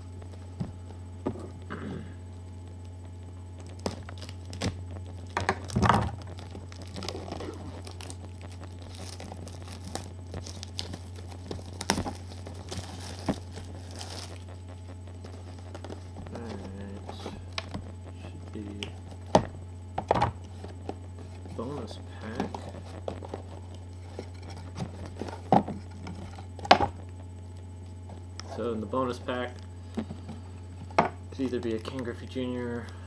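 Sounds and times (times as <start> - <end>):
steady low hum: 0.0 - 33.0
packaging tearing and crinkling: 3.7 - 14.6.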